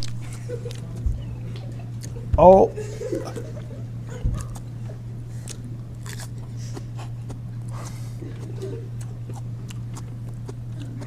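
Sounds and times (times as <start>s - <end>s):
steady low hum: 0.0s - 11.0s
person chewing crunchily: 4.3s - 4.7s, 5.3s - 11.0s.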